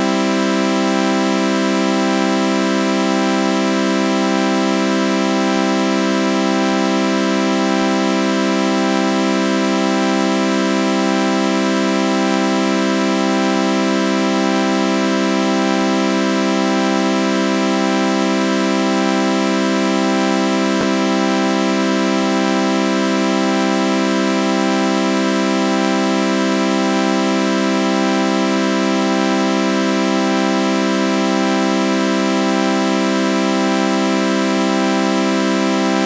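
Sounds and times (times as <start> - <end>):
synth chord with flanger: 20.8 - 21.6.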